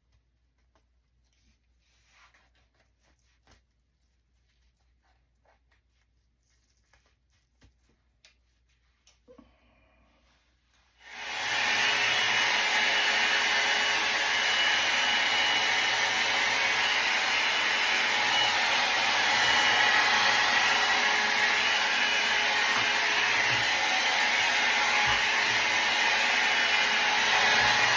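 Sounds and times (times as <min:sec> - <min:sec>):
hair dryer blowing: 0:11.0 - 0:27.9.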